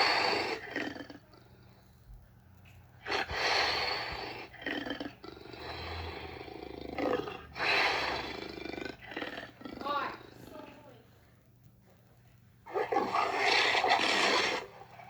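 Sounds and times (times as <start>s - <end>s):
monster roar: 13.0s - 14.7s.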